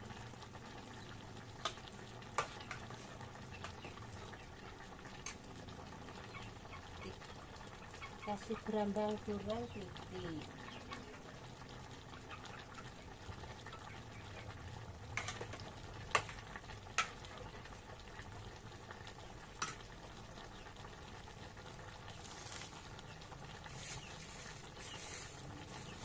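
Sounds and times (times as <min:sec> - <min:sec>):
food simmering in a pan: 0:00.0 - 0:26.0.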